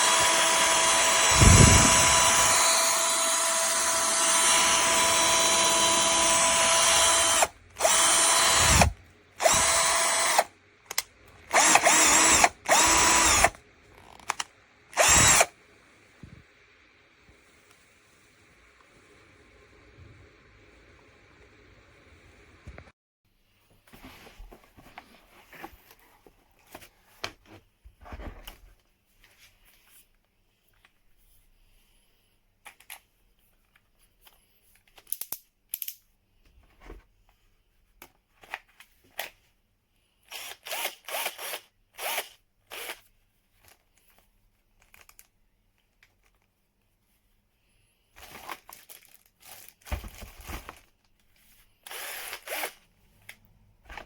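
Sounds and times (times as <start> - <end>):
rustling and scraping: 23.6 - 31.6, 48.2 - 51.8.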